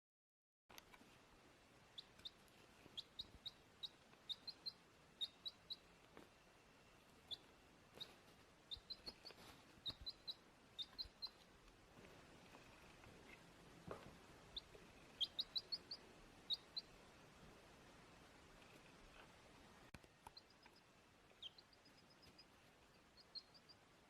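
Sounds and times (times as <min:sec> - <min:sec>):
bird chirping: 0:01.8 - 0:11.6, 0:14.4 - 0:17.1, 0:20.0 - 0:24.0.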